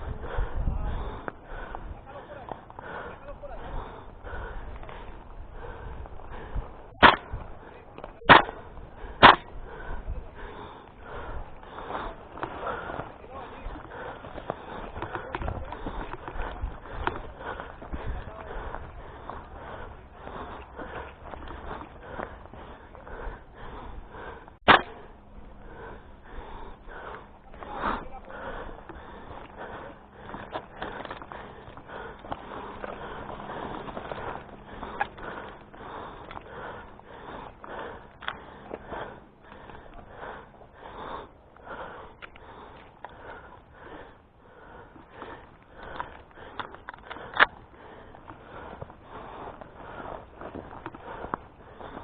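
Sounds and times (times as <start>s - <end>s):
airsoft rifle shots: 7.0s - 7.3s, 8.3s - 8.6s, 9.2s - 9.5s, 24.7s - 25.0s.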